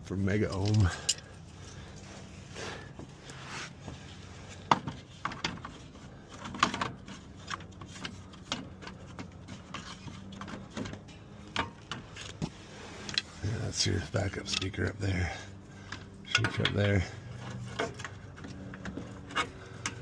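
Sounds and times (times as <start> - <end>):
steady low hum: 0.0 - 20.0
small hard parts clicking and rattling: 4.5 - 20.0.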